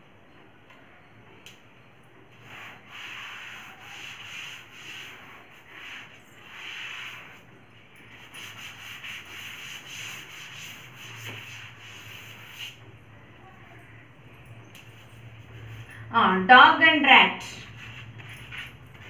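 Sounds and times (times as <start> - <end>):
rubbing strokes on a surface: 2.4 - 12.9, 17.6 - 19.0.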